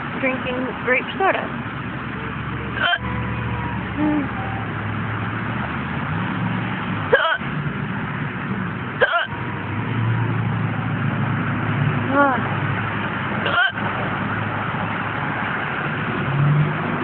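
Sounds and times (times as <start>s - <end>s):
person hiccuping: 2.8s - 3.0s, 7.1s - 7.4s, 9.0s - 9.3s, 13.5s - 13.8s.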